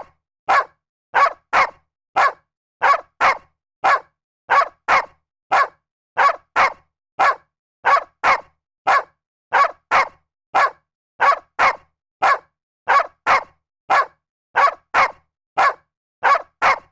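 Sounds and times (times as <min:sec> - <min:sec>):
dog barking: 0:00.0 - 0:16.9.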